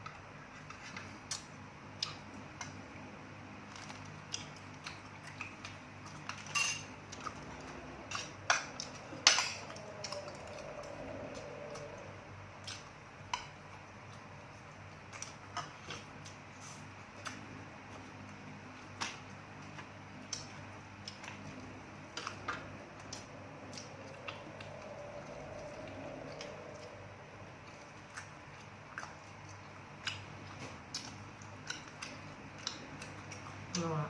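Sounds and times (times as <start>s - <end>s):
faint steady hum: 0.0s - 34.0s
utensils clinking against dishes: 6.2s - 7.4s, 8.1s - 10.5s.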